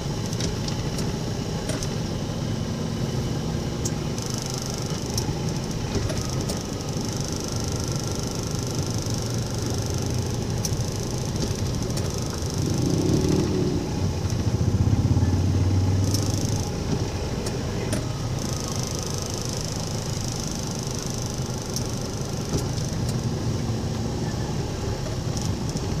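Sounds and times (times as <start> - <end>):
vehicle engines running: 0.0 - 26.0
vehicle passing: 12.6 - 16.3.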